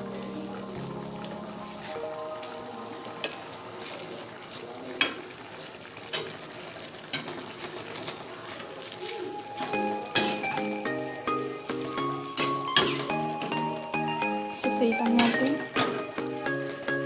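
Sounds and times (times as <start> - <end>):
cabbage sizzling in a pan: 0.0 - 17.0
spatula clinking against pan: 9.6 - 17.0.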